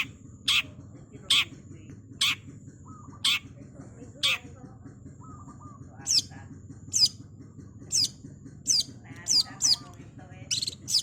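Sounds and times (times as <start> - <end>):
soft bird chattering: 0.0 - 11.0
shrike calling: 7.9 - 11.0.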